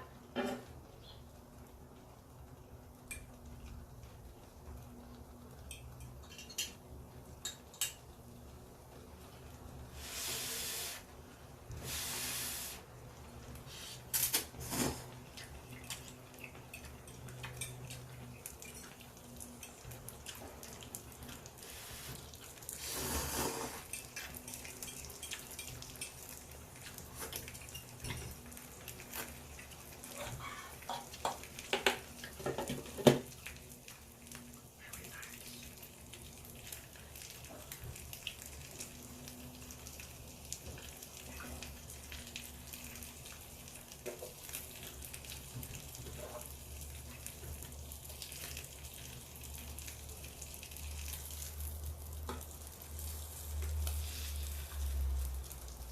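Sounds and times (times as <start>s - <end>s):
dishes and utensils clinking: 5.7s - 6.8s.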